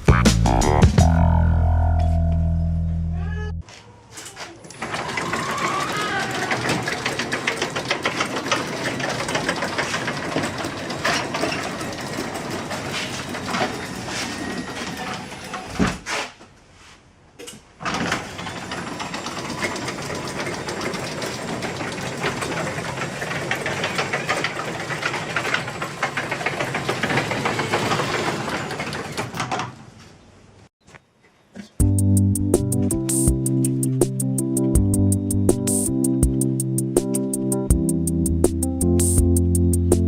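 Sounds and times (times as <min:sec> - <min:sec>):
garage door opener clattering: 0:04.7 - 0:16.1, 0:17.4 - 0:30.0.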